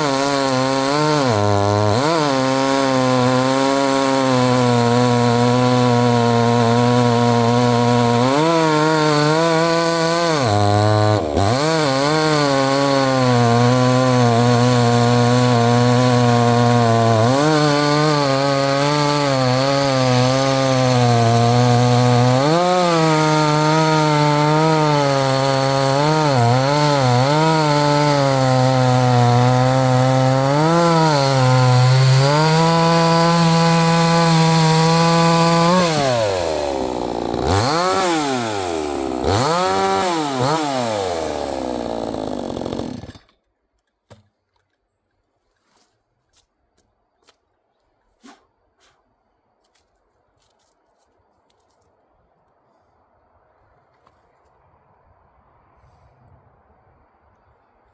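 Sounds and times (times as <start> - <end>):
chainsaw cutting wood: 0.0 - 44.7.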